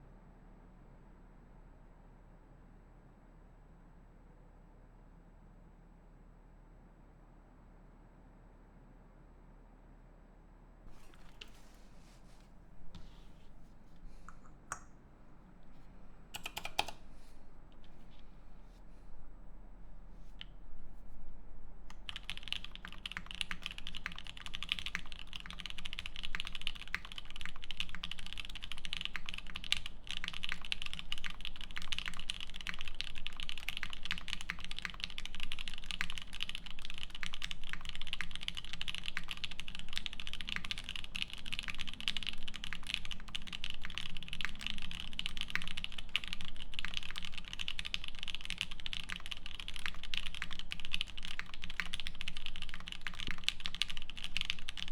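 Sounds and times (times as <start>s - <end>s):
fast typing on mechanical keyboard: 16.3s - 17.1s, 21.9s - 54.9s.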